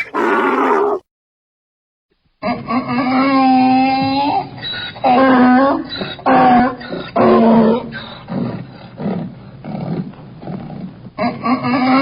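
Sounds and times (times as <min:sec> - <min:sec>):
donkey braying: 0:00.0 - 0:01.0
donkey wheezing breaths: 0:00.0 - 0:01.0.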